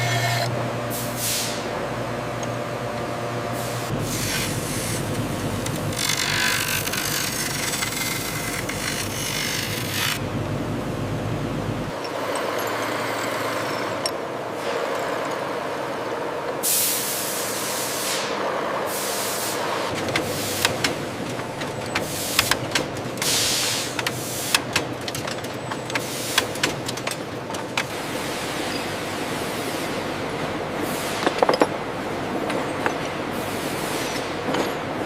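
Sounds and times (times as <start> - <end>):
machinery hum: 0.0 - 35.0
hissing air bursts: 23.2 - 24.6.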